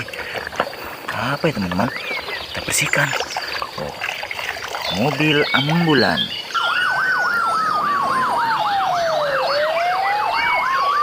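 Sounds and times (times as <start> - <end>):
ambulance siren wailing: 4.9 - 11.0
slow gliding siren tone: 5.5 - 11.0.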